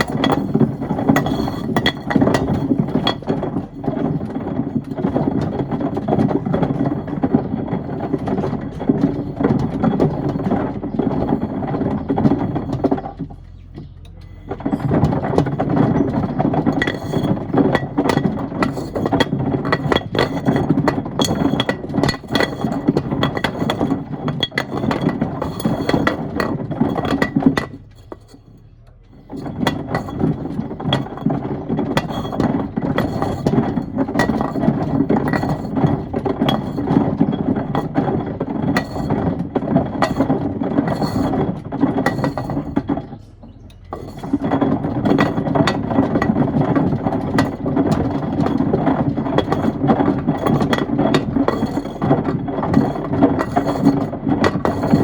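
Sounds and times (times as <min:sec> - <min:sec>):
wood and stones tumbling in drum: 0:00.0 - 0:55.0.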